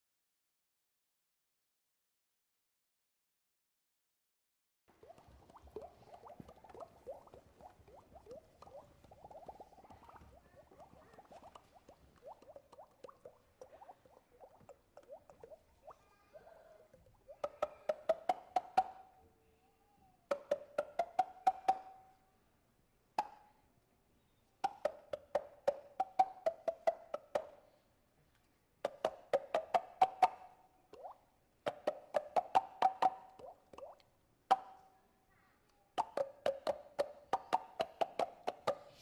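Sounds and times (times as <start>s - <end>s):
body clicks: 5.0s - 16.0s.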